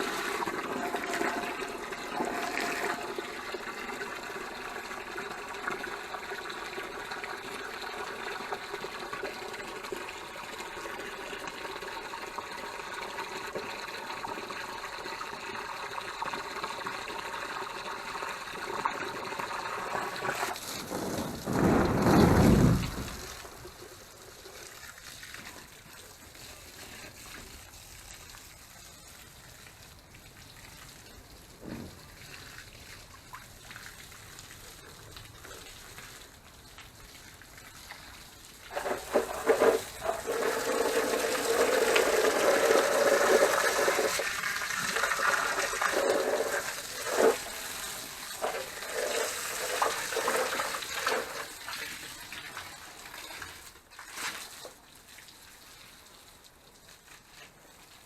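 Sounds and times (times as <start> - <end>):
water splashing onto plants: 20.4 - 28.8, 32.0 - 58.0.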